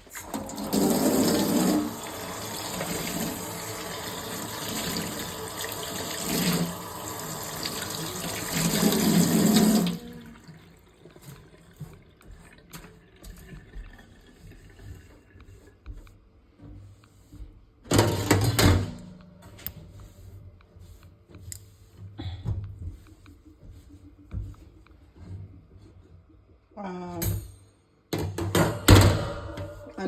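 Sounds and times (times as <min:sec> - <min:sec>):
tap water running into sink: 0:00.0 - 0:16.1.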